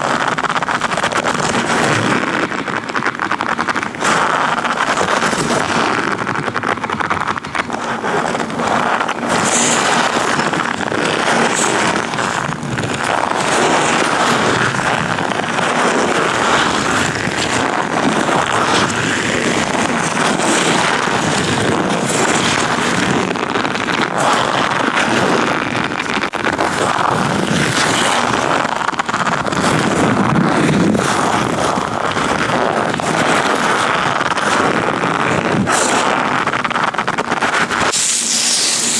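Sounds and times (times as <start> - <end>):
gloved hands rubbing microphone: 3.3 - 25.4, 35.8 - 38.9.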